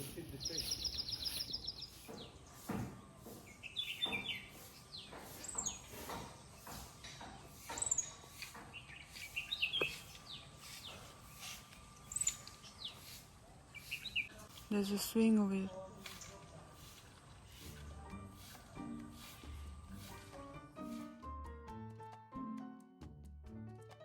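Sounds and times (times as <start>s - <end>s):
birds chirping: 0.0s - 17.8s.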